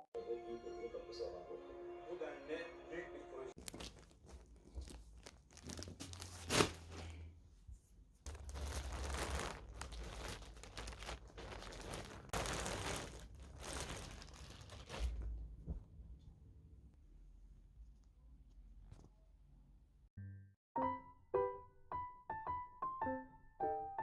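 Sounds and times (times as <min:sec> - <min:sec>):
paper crinkling and tearing: 0:03.6 - 0:07.2, 0:08.2 - 0:15.4.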